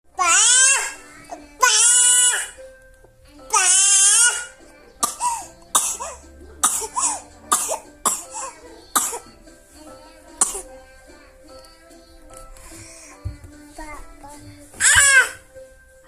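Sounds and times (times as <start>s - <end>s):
baby screaming: 0.2s - 1.0s, 1.6s - 2.6s, 3.5s - 4.5s, 14.8s - 15.4s
baby coughing: 3.5s - 9.4s, 10.4s - 10.8s, 14.8s - 15.4s.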